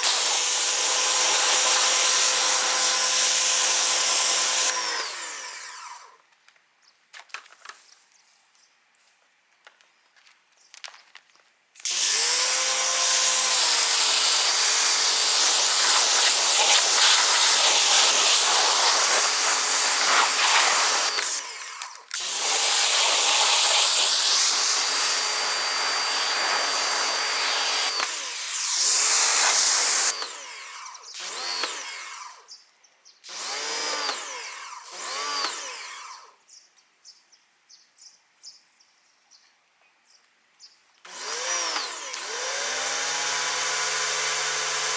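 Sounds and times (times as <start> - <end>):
pressure washer spraying: 0.0 - 4.7, 11.8 - 21.6, 22.2 - 30.2
pump motor whirring: 0.0 - 6.2, 11.8 - 32.4, 33.3 - 36.3, 41.1 - 44.9.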